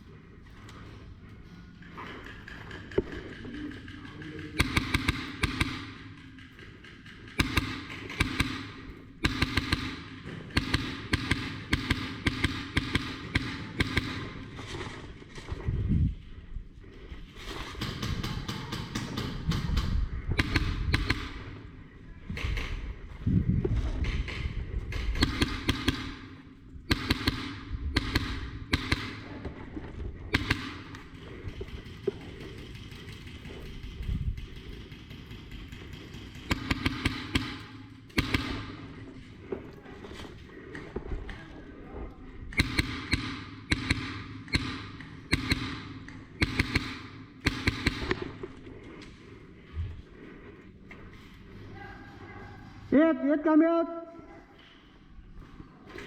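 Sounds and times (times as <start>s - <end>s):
airsoft gun shots: 4.6s - 6.4s, 7.2s - 14.3s, 17.7s - 21.6s, 24.0s - 29.3s, 30.3s - 31.1s, 34.6s - 38.9s, 42.5s - 48.4s.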